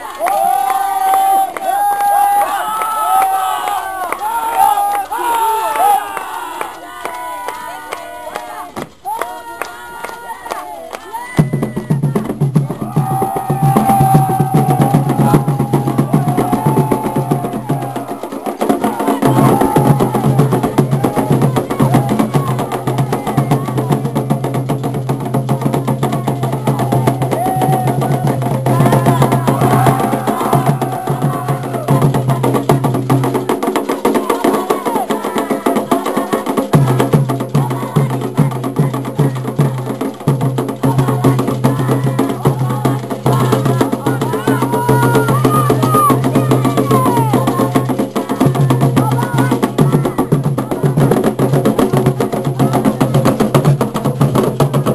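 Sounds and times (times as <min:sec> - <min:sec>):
voices singing: 0:03.4 - 0:25.0, 0:25.6 - 0:53.6
wood block percussion: 0:11.0 - 0:54.9
hand drums fast rhythm: 0:11.2 - 0:54.9.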